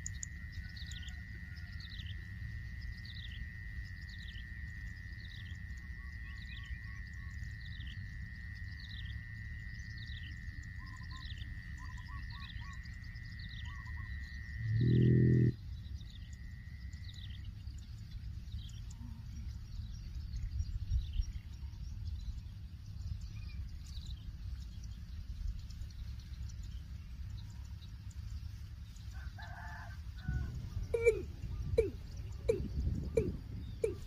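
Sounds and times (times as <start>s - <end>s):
steady low rumble: 12.8s - 29.2s, 30.0s - 34.0s
bird chirps and calls: 30.3s - 34.0s.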